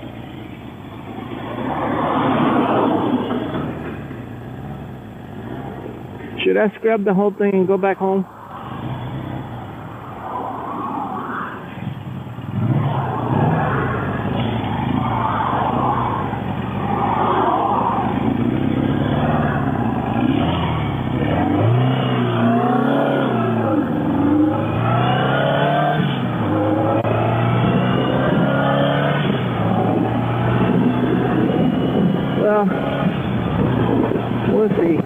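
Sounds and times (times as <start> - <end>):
motorcycle engine revving: 0.0 - 6.3, 8.4 - 10.8, 11.7 - 35.0
wind rushing over microphone: 7.5 - 35.0.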